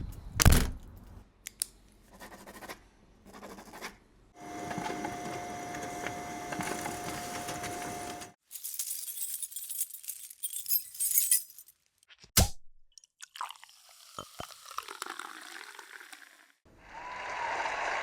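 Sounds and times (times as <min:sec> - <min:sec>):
glass clinking and tinkling: 0:08.6 - 0:11.7
applause: 0:17.0 - 0:18.0.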